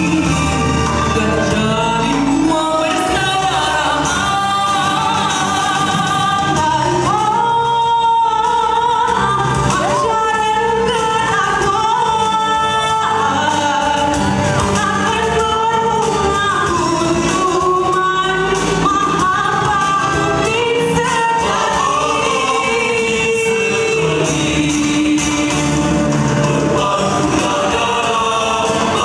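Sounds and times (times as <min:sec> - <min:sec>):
musical accompaniment with beat: 0:00.0 - 0:29.0
vocal group singing in harmony: 0:00.0 - 0:29.0.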